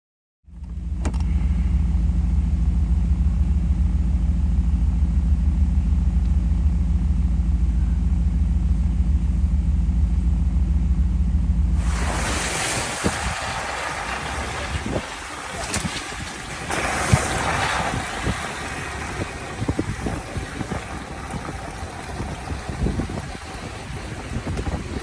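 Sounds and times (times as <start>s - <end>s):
car engine rumbling: 0.5s - 25.0s
wind noise on microphone: 11.8s - 25.0s.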